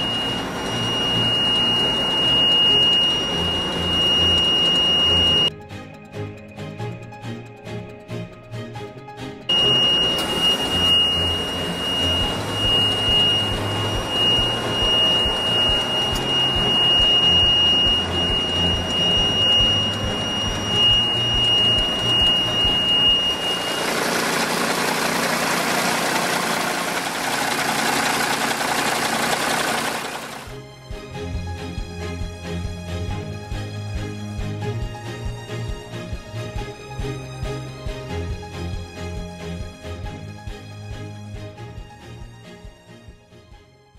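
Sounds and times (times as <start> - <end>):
diesel truck engine running: 0.0 - 5.5, 9.5 - 30.5
high whine: 0.0 - 5.5, 9.5 - 30.5.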